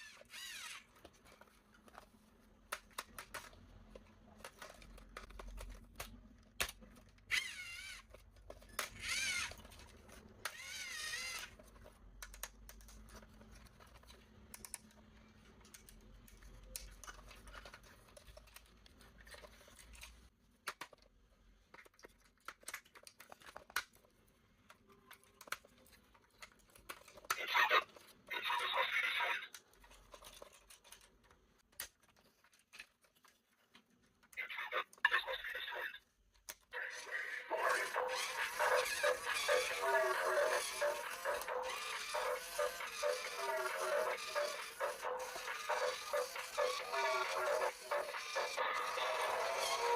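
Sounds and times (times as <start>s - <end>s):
plastic toy parts clicking: 0.0s - 28.1s, 29.0s - 35.0s, 36.3s - 36.7s.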